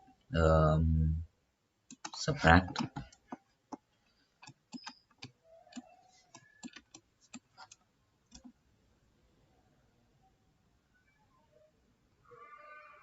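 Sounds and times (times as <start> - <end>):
mouse and keyboard clicks: 4.4 - 8.6.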